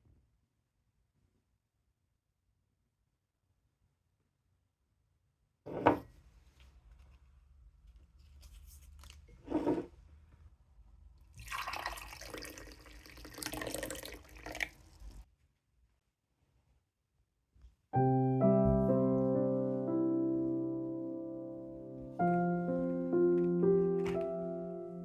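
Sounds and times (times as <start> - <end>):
water running: 11.4 - 15.2.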